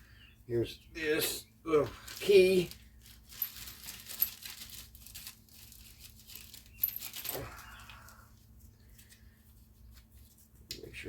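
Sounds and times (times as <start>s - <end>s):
metal parts clicking and clinking: 2.1s - 7.9s.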